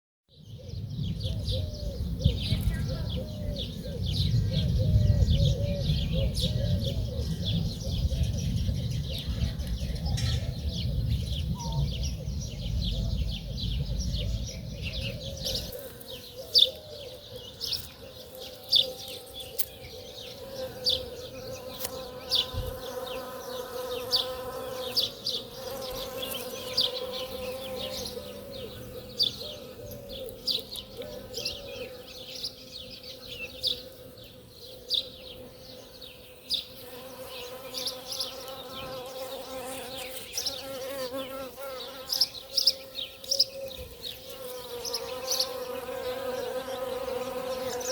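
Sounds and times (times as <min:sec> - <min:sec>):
songbirds chirping: 0:00.3 - 0:47.9
bee buzzing: 0:17.6 - 0:34.6, 0:35.2 - 0:43.3, 0:44.0 - 0:47.9.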